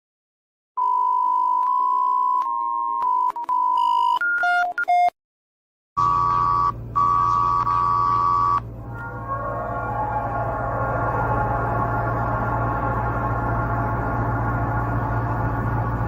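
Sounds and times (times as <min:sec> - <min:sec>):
dark ambient drone: 0:06.4 - 0:16.0
low rumble: 0:08.6 - 0:16.0.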